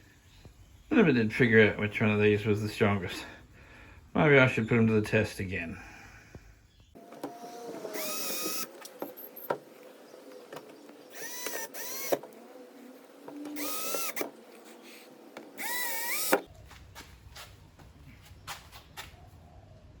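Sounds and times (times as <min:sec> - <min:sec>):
impact wrench motor whining: 0:07.0 - 0:16.5.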